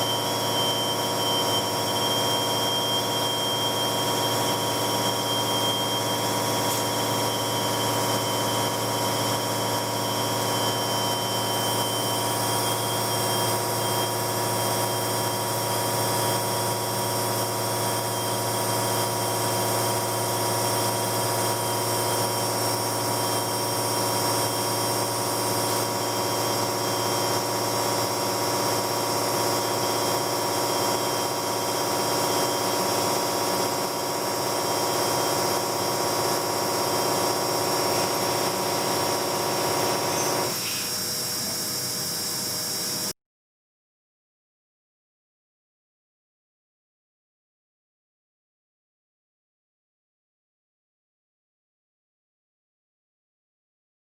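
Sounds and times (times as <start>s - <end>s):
drilling machine whine: 0.0s - 43.1s.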